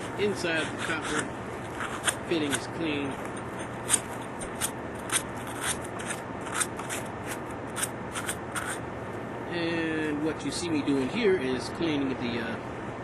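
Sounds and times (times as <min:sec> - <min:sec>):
abrasive scrubbing inside copper pipe: 0:00.0 - 0:02.8.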